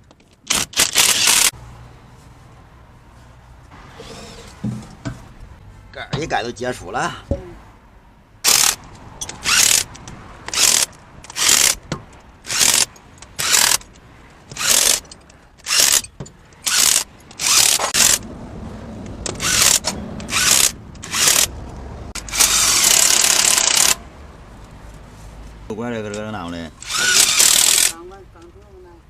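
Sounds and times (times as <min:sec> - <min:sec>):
power wrench bursts: 0:00.4 - 0:01.5, 0:08.4 - 0:11.8, 0:12.4 - 0:13.9, 0:14.5 - 0:18.2, 0:19.3 - 0:21.5, 0:22.1 - 0:24.0, 0:26.8 - 0:28.0.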